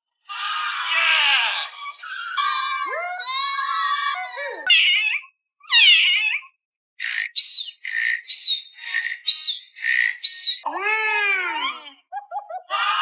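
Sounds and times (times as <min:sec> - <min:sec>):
monkey squealing: 0:04.7 - 0:10.7
monkey chirping: 0:05.7 - 0:06.4, 0:07.0 - 0:10.6.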